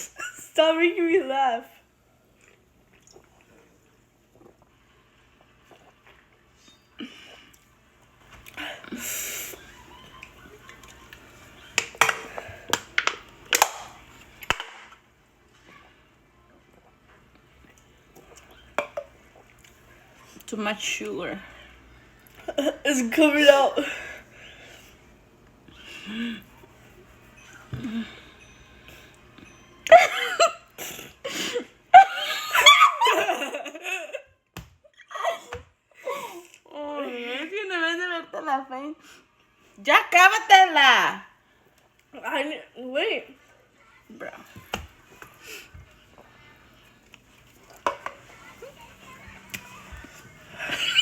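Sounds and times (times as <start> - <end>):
high-pitched laughing: 50.6 - 51.0.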